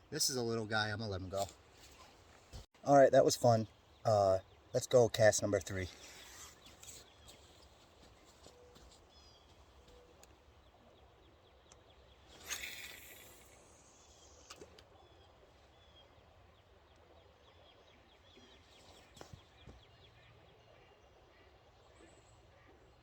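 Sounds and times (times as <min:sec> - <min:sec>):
faint bird chirps: 0:05.9 - 0:23.0.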